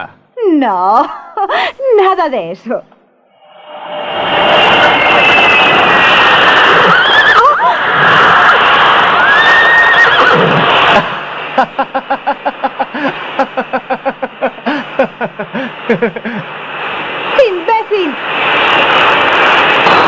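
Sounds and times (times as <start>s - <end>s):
horse whinnying: 9.8s - 10.7s.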